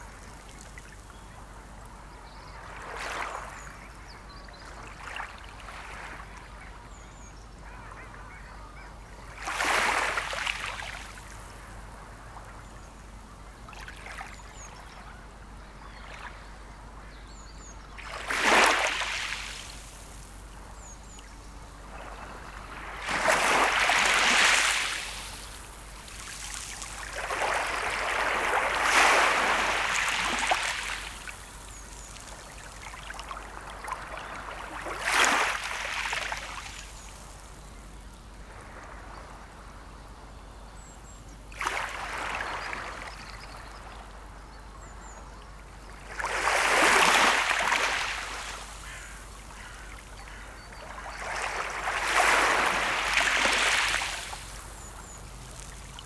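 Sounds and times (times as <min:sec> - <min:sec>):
waves breaking on shore: 0:09.4 - 0:12.5, 0:18.0 - 0:20.8, 0:21.8 - 0:37.5, 0:46.1 - 0:56.0.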